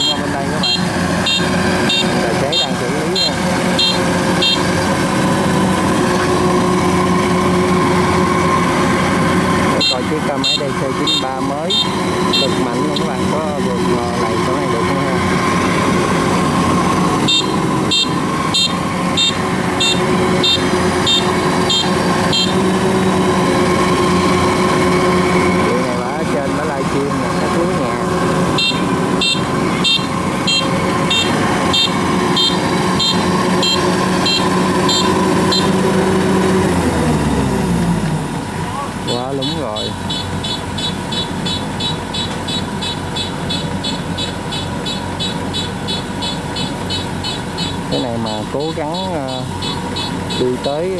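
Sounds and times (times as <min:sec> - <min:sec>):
high electronic warning beeps: 0:00.0 - 0:04.8, 0:09.7 - 0:15.2, 0:17.2 - 0:22.8, 0:28.6 - 0:35.9, 0:39.1 - 0:50.9
combine harvester engine running: 0:00.0 - 0:50.9.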